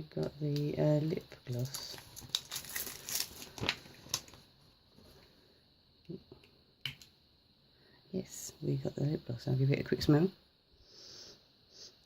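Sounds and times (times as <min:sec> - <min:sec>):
plastic packaging crinkling: 0:01.5 - 0:04.5.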